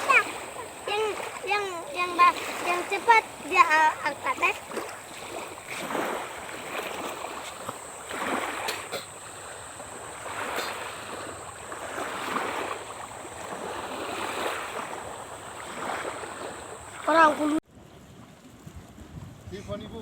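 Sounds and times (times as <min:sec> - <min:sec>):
small waves washing ashore: 0:00.0 - 0:19.5.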